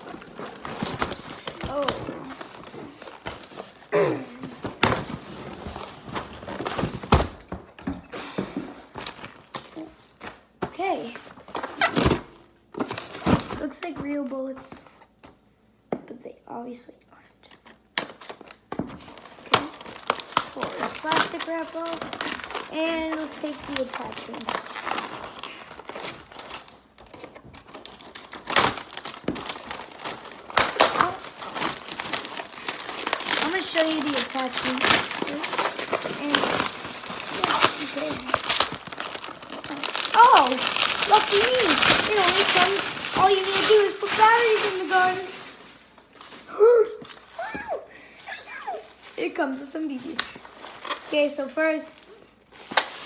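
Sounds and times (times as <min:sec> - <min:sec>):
plastic wrap crinkling: 0:00.0 - 0:13.7, 0:17.5 - 0:53.0
packaging knocks and thuds: 0:04.4 - 0:10.8, 0:11.4 - 0:14.1, 0:18.0 - 0:45.6.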